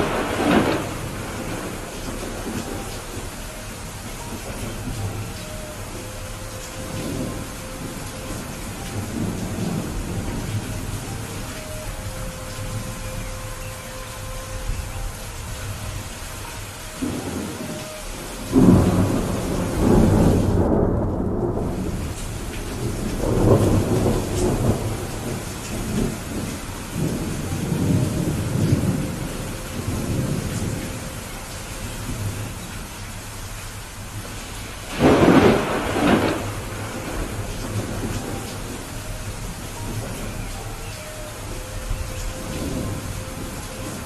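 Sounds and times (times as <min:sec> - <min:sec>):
loud thunderclap: 0:00.0 - 0:02.7, 0:18.5 - 0:29.1, 0:34.9 - 0:38.8
steady rain: 0:00.0 - 0:44.0
thunder rumbling: 0:00.0 - 0:44.0.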